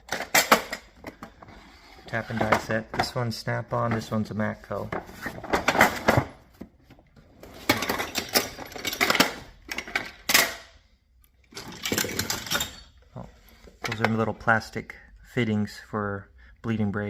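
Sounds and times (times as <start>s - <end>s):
tools clattering in drawer: 0.0s - 1.4s, 4.9s - 6.4s, 7.3s - 10.7s, 11.4s - 13.0s.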